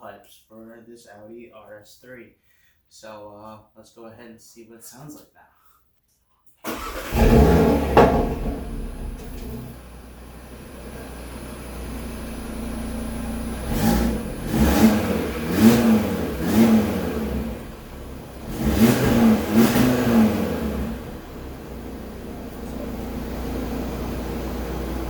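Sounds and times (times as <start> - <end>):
car engine idling: 6.7 - 25.0
engine revving in throttle blips: 6.7 - 25.0.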